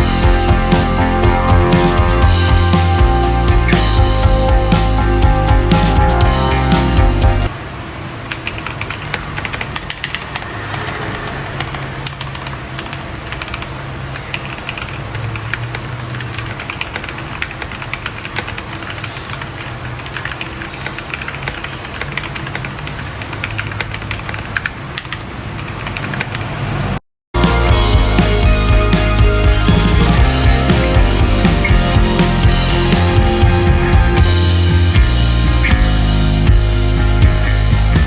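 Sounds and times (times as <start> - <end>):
mechanical keyboard typing: 8.4 - 26.6.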